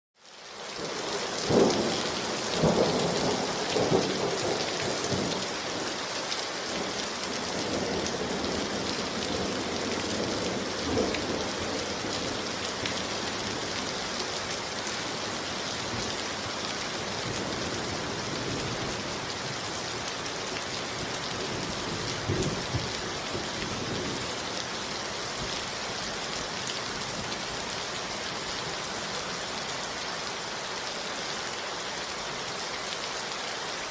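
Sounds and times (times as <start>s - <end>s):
steady rain: 0.2s - 33.9s
thunder rumbling: 20.9s - 24.4s.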